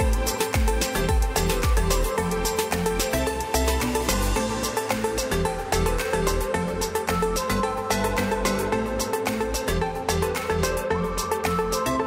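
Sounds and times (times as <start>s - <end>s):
deep bass kicks: 0.0s - 2.0s.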